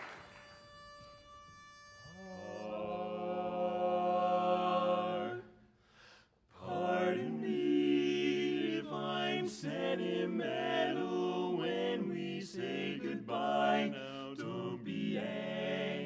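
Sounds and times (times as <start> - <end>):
pitch pipe note: 0.4 - 3.5
male quartet singing in harmony: 2.4 - 5.6, 6.6 - 16.0.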